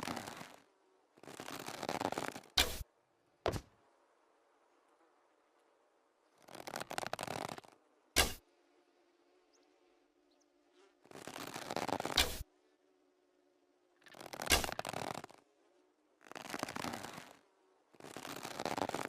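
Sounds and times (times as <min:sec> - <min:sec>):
bow draw scraping rustle: 0:00.0 - 0:02.9, 0:05.5 - 0:08.5, 0:10.6 - 0:12.8, 0:14.0 - 0:19.0
bowstring snap: 0:08.2 - 0:08.4, 0:12.1 - 0:12.4.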